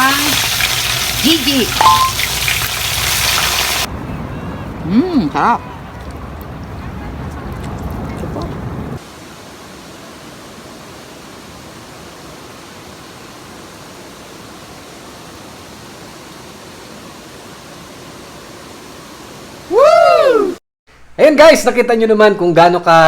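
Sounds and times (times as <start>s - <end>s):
steady background hiss: 9.0s - 20.6s.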